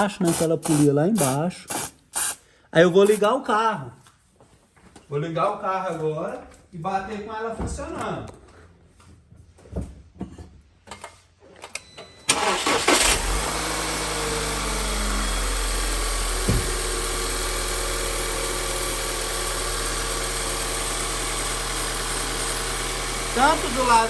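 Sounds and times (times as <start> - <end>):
car engine starting and idling: 12.3 - 24.0.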